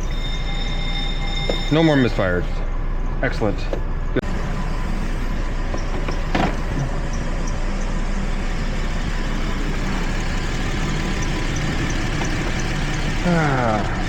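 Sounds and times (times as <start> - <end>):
car engine idling: 2.8 - 14.0.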